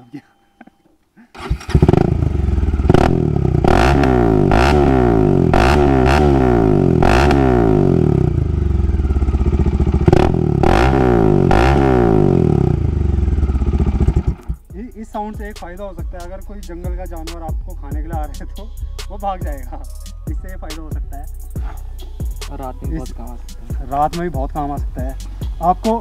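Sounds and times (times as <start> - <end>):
motorcycle engine revving: 1.4 - 14.7.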